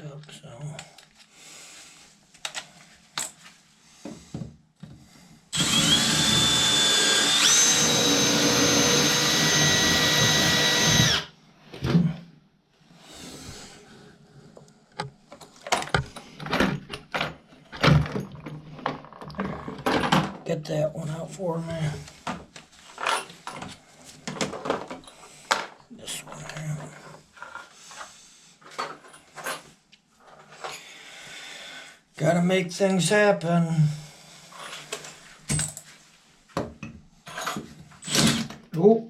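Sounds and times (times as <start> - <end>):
power drill boring: 5.5 - 11.3.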